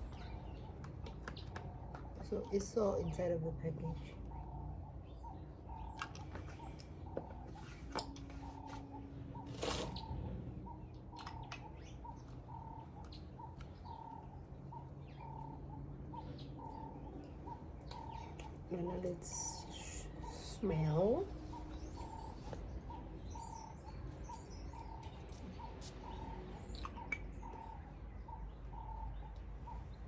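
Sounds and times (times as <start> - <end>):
faint bird-like chirps: 3.8 - 30.0.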